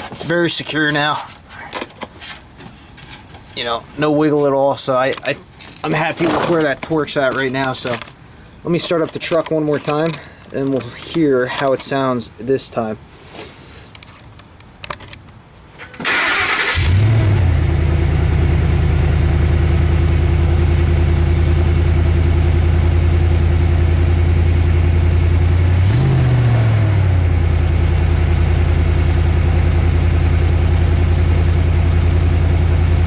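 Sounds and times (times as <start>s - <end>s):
starter cranking engine: 16.0s - 17.4s
truck engine idling: 16.2s - 25.8s, 27.1s - 33.0s.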